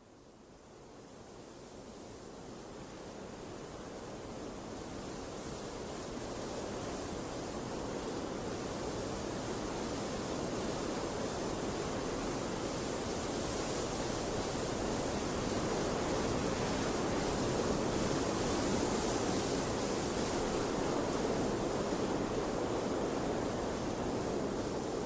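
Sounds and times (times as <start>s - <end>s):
rushing water: 9.6s - 25.0s.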